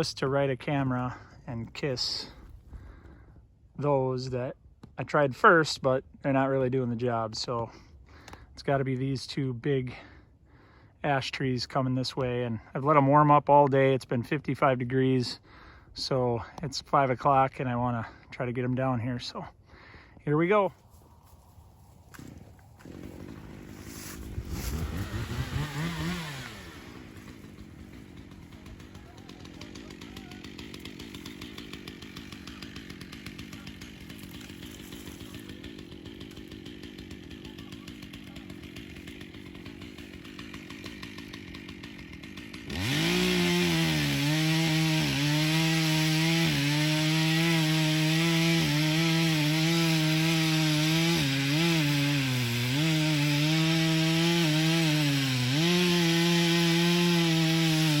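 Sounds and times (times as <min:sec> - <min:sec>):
chainsaw revving and cutting wood: 0:20.3 - 0:58.0.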